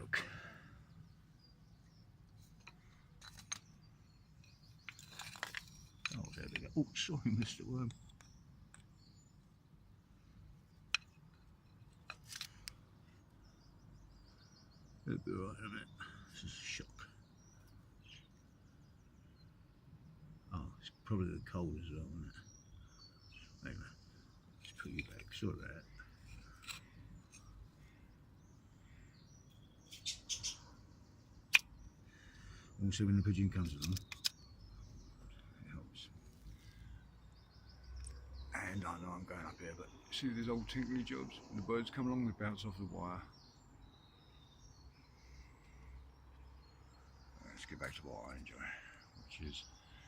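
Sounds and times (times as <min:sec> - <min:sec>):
faint outdoor background: 0:00.0 - 0:50.0
small birds chirping: 0:00.0 - 0:50.0
scraping and rustling: 0:04.4 - 0:06.8.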